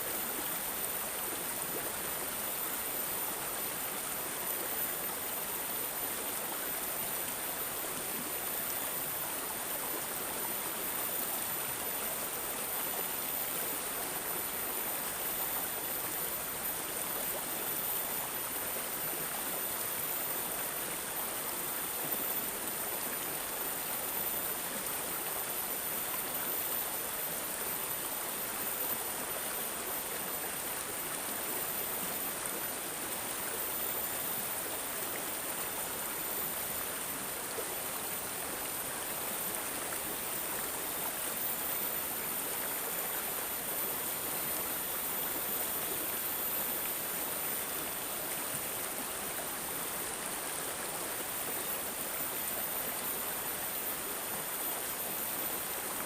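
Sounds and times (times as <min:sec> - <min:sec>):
water babbling and gurgling: 0:00.0 - 0:56.0.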